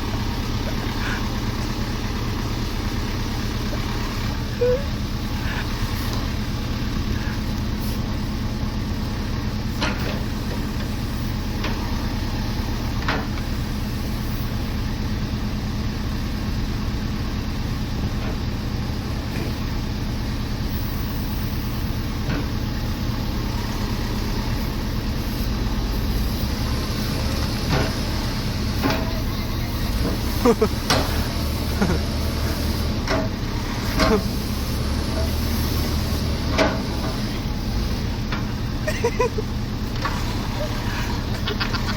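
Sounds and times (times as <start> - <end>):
heavy machine engine running: 0.0 - 41.9
short knocks and clanks: 36.4 - 37.4.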